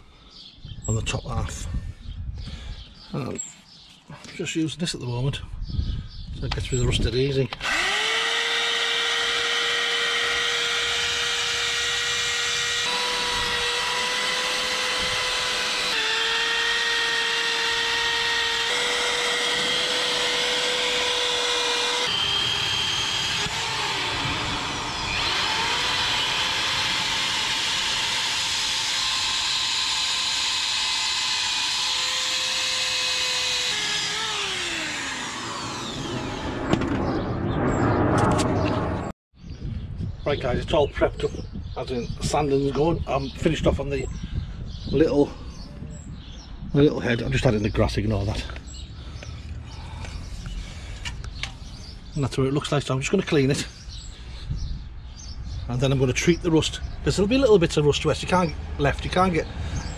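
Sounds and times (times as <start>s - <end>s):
electric drill whining: 7.6s - 36.8s.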